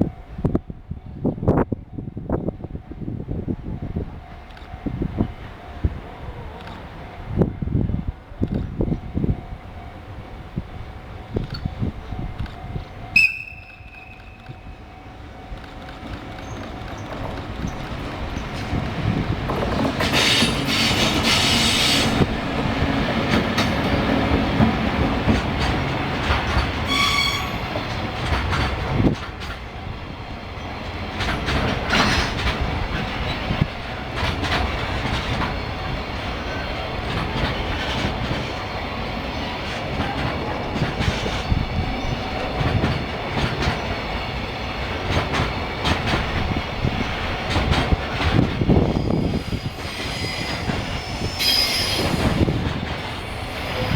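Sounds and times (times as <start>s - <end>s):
train wheels clattering over rails: 15.2s - 53.9s
high-pitched squeal: 48.9s - 52.5s.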